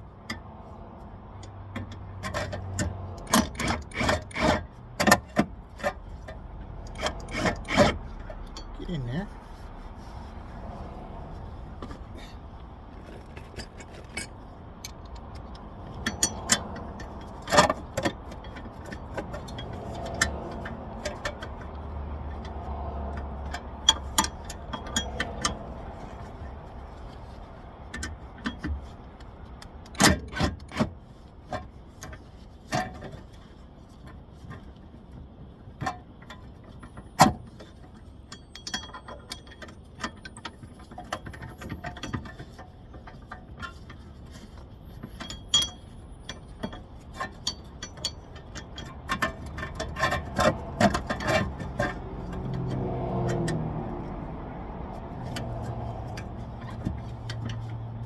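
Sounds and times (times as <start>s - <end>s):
hand tools clinking on metal: 12.0s - 25.8s, 36.2s - 54.1s.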